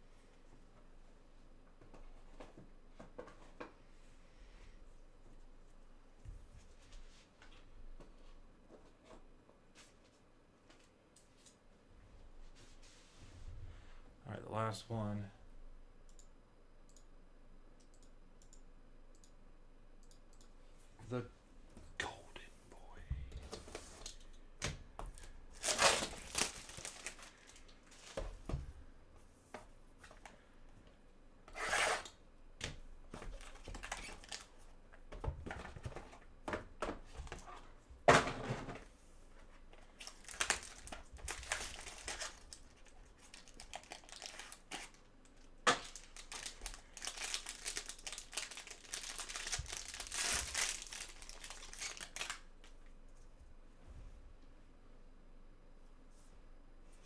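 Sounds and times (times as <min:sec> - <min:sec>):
plastic wrapping tearing and crumpling: 0:25.5 - 0:28.1, 0:33.4 - 0:34.5, 0:40.0 - 0:52.5.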